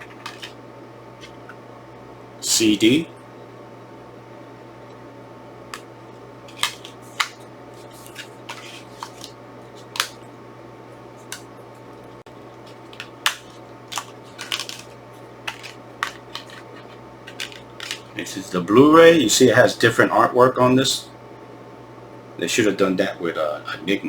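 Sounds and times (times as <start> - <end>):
plastic cases clicking and tapping: 0.0 - 0.6, 6.5 - 7.4, 8.0 - 10.2, 12.7 - 18.2
steady low hum: 0.0 - 24.0.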